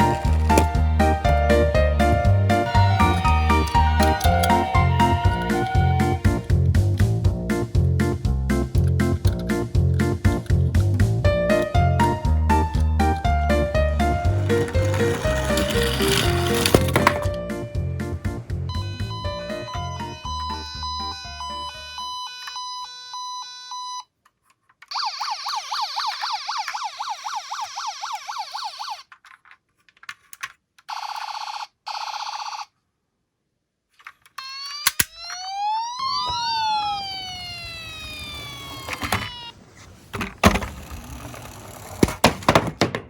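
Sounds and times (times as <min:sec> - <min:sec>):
toy jingle: 0:00.0 - 0:06.5
electronic toy siren warbling: 0:00.0 - 0:06.6, 0:18.7 - 0:24.0, 0:24.9 - 0:29.1, 0:34.4 - 0:39.6
toy cars rattling: 0:00.0 - 0:07.2, 0:08.7 - 0:17.4, 0:24.4 - 0:31.4, 0:34.0 - 0:39.5, 0:40.1 - 0:43.0
sharp knocks: 0:42.0 - 0:43.0.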